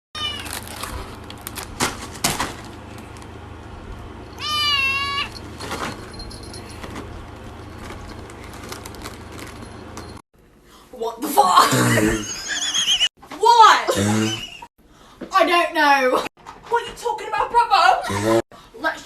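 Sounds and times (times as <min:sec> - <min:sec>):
meow-like animal call: 0:00.2 - 0:00.6, 0:04.4 - 0:05.3.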